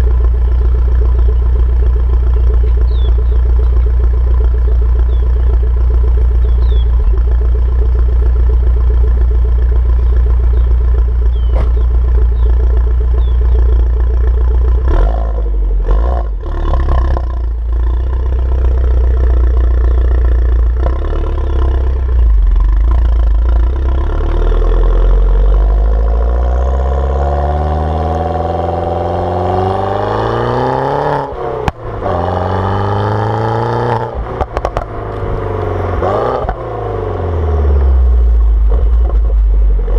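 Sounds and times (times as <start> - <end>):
exhaust pops: 0.0 - 15.5, 33.8 - 36.6, 37.7 - 39.9
car engine exhaust revving: 0.0 - 39.9
exhaust crack: 0.0 - 39.9.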